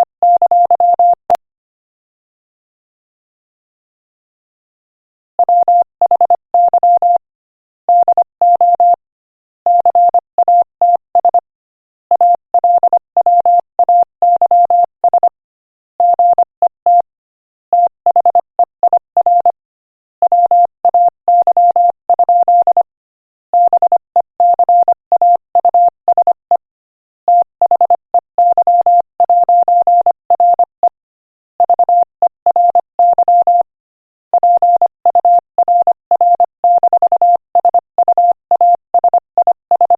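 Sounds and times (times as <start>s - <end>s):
morse code beeps: 0.0s - 1.2s, 5.4s - 7.2s, 7.9s - 9.0s, 9.7s - 11.5s, 12.1s - 15.4s, 16.0s - 17.1s, 17.8s - 19.6s, 20.2s - 22.9s, 23.6s - 26.6s, 27.3s - 31.0s, 31.6s - 33.7s, 34.3s - 39.9s.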